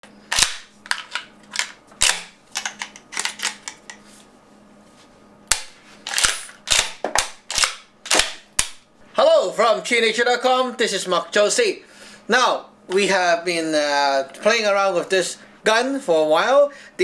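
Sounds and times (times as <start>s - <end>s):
airsoft gun sharp cracks: 0.4s - 0.7s, 5.5s - 8.8s.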